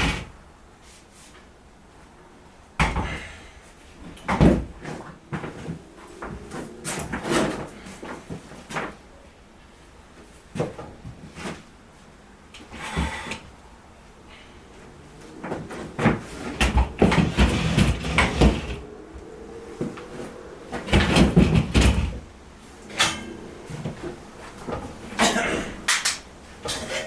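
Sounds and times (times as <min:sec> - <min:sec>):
hard objects clunking and scraping: 0:04.0 - 0:09.0, 0:12.6 - 0:13.6, 0:14.8 - 0:19.0, 0:19.8 - 0:27.0.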